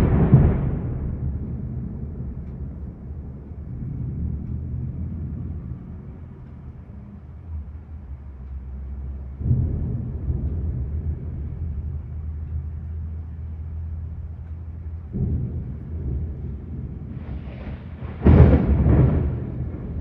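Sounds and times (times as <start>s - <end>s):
low thunder rumbling: 0.0s - 20.0s.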